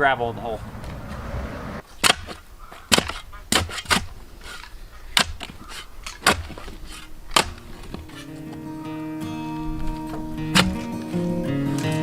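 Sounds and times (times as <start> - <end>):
shovel scraping gravel: 1.8 - 8.7, 9.7 - 11.4.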